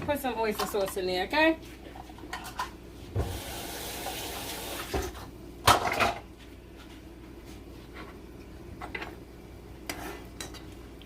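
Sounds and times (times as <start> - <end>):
boiling water hiss: 3.2 - 5.0.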